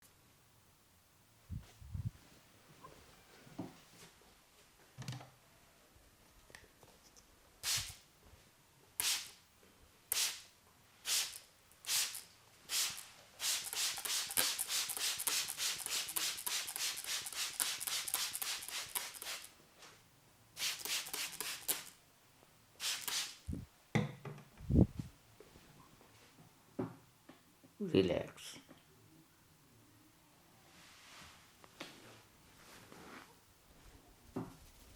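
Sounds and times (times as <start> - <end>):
hair crackling when rubbed: 11.9 - 19.5.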